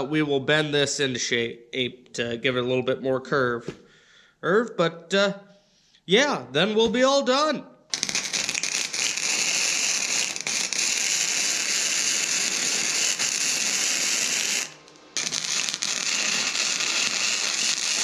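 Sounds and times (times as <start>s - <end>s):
arc welding crackling: 7.9s - 18.0s.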